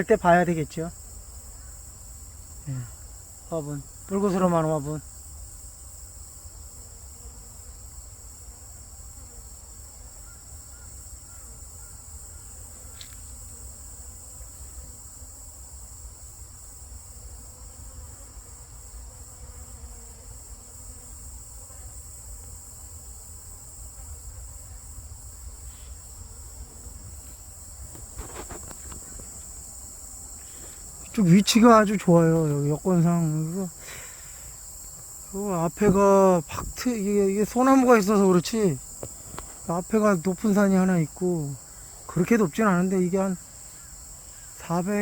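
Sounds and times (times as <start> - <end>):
bees buzzing: 0.0 - 45.0
high-pitched insect chirring: 27.2 - 45.0.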